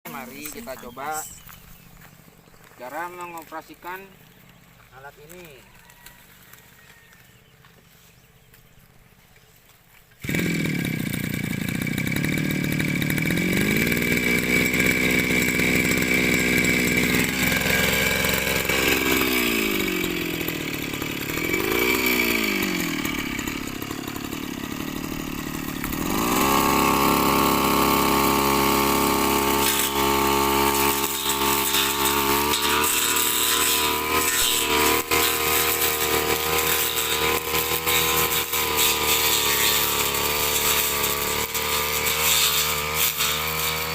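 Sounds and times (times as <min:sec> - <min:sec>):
power trimmer engine running: 0:00.1 - 0:08.9, 0:09.8 - 0:43.9.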